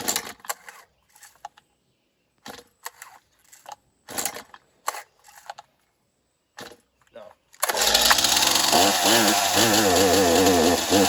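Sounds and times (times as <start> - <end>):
chainsaw starter cord whirring: 7.6 - 11.0.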